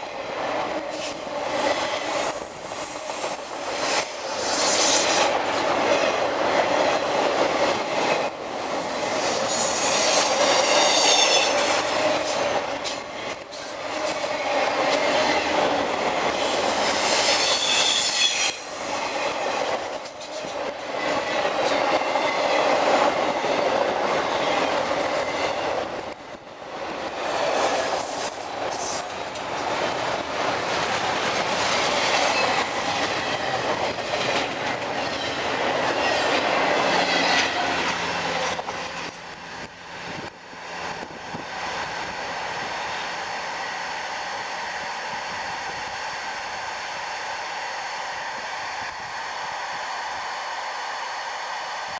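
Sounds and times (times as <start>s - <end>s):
freight cars rolling on rails: 0.0s - 42.8s
high-pitched wheel squeals: 9.5s - 11.8s, 16.4s - 18.7s.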